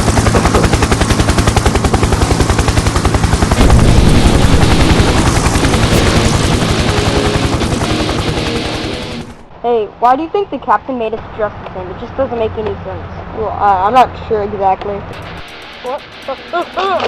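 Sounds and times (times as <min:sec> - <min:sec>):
helicopter rotor chopping: 0:00.0 - 0:09.5, 0:15.1 - 0:17.0.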